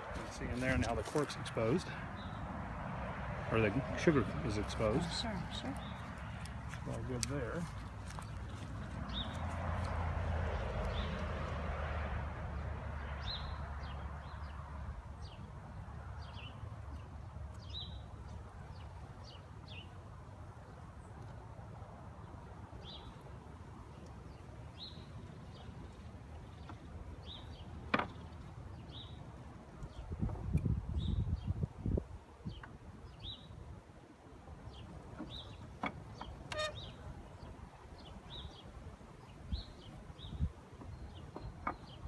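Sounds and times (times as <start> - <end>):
birds chirping: 0.0 - 2.6, 3.2 - 11.3, 34.7 - 42.0.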